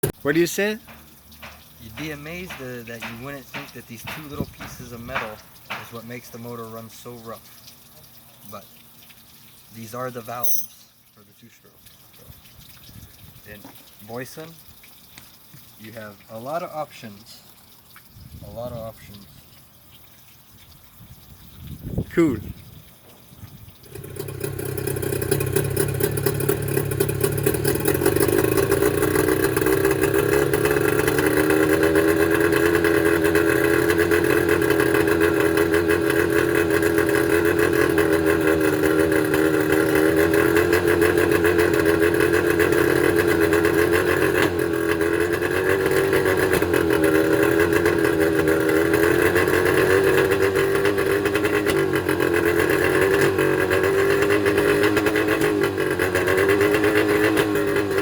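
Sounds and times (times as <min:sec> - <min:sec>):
outboard motor rough idle: 0:00.1 - 0:07.4, 0:23.8 - 0:58.0.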